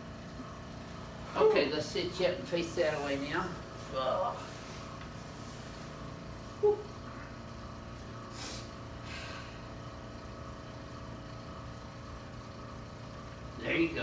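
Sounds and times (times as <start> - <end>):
low mechanical hum: 0.0 - 14.0
faint breathy hisses: 8.3 - 9.6.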